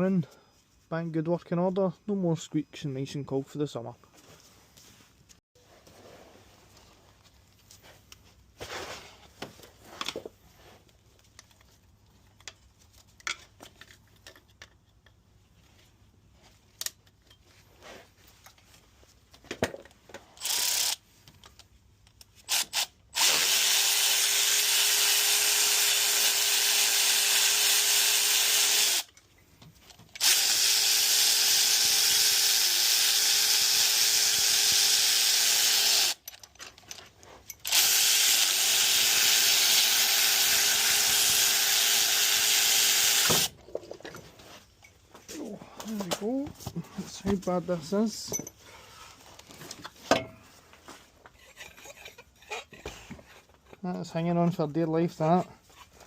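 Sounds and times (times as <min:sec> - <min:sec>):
tools clicking and knocking: 0:11.2 - 0:15.3, 0:36.2 - 0:37.8, 0:48.3 - 0:48.6, 0:49.8 - 0:50.4
cordless power tool running: 0:22.6 - 0:29.1, 0:30.2 - 0:36.2, 0:37.7 - 0:43.5.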